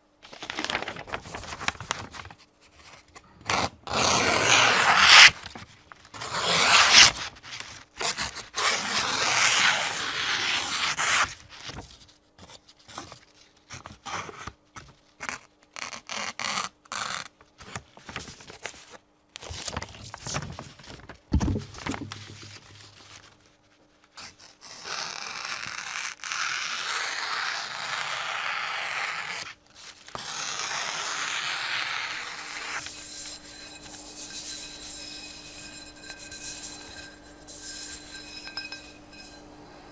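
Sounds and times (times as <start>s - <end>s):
low thump: 21.4s - 22.6s
knife slicing and scraping: 32.2s - 39.5s.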